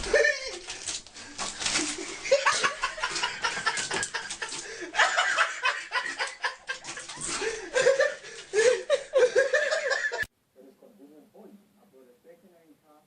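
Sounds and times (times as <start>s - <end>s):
people laughing: 0.0s - 0.7s, 1.8s - 10.3s.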